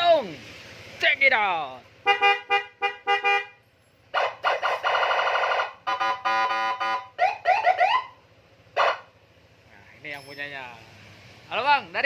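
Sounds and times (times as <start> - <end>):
siren blasts and whoops: 4.2 - 8.2.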